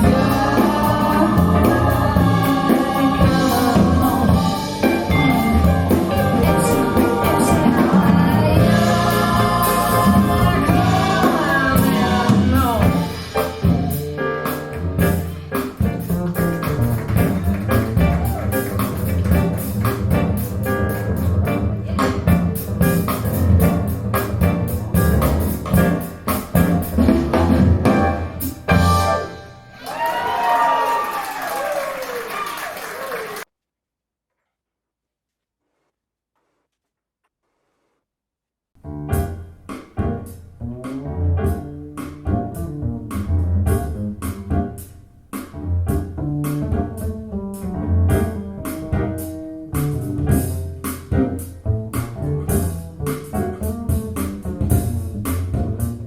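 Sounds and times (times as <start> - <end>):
drum hits: 0.0 - 29.1
jazz music with piano and bass: 0.0 - 29.8, 38.8 - 56.0
instrumental rock music on loudspeakers: 3.6 - 20.4.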